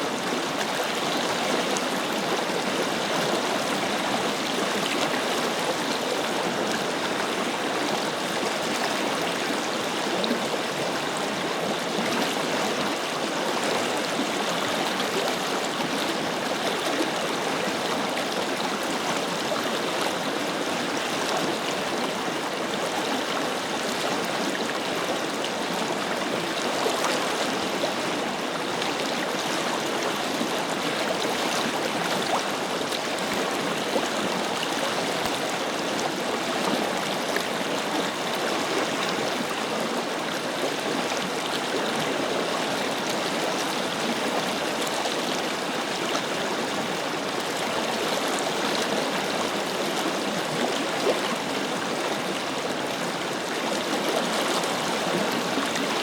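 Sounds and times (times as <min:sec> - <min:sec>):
river flowing over stones: 0:00.0 - 0:56.0.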